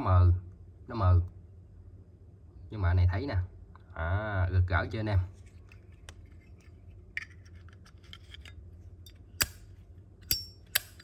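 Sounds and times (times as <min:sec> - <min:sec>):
sharp metallic lighter lid clicks: 0:09.4 - 0:11.0.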